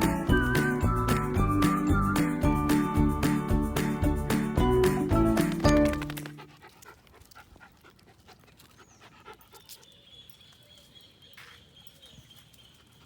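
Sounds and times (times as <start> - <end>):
dog panting: 6.1 - 10.2.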